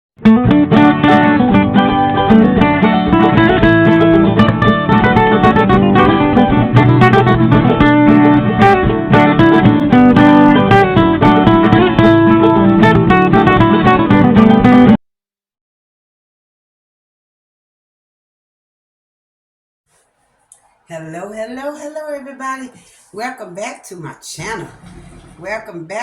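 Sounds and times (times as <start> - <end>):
plucked acoustic guitar music: 0.2 - 15.0, 24.5 - 25.8.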